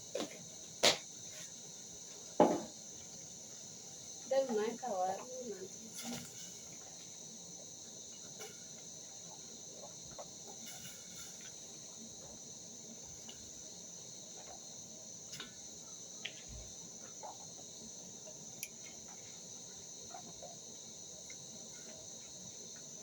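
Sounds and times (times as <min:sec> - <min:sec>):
crickets chirring: 0:00.0 - 0:23.0.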